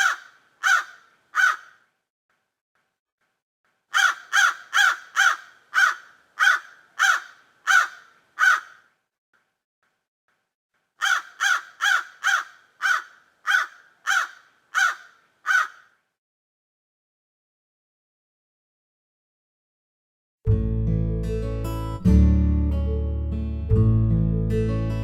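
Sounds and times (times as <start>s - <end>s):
crow cawing: 0.0s - 1.9s, 3.9s - 8.9s, 11.0s - 16.0s.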